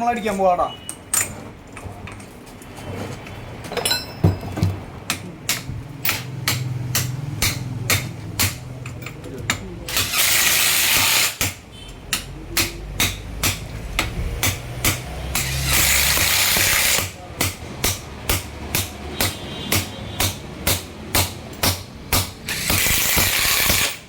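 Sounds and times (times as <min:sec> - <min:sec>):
hammer striking metal: 0:05.1 - 0:24.0.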